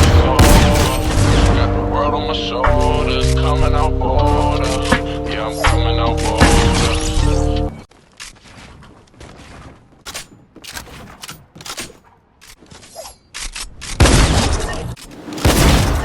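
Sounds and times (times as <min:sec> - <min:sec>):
shotgun blasts: 0:00.0 - 0:01.6.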